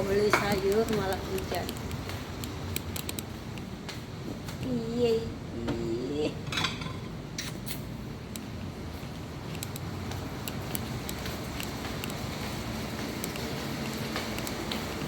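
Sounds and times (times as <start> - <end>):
steady rain: 8.7 - 15.0.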